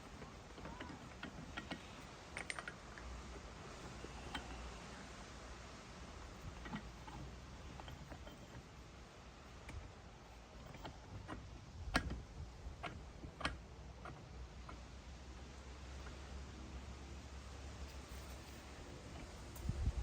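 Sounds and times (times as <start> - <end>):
tools clicking and knocking: 0.0 - 4.7, 6.4 - 8.8, 9.5 - 15.0.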